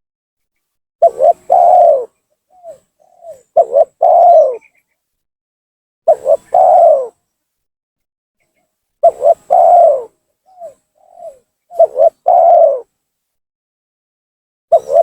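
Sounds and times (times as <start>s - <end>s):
dove cooing: 1.0s - 4.8s, 6.1s - 7.2s, 9.0s - 12.9s, 14.7s - 15.0s.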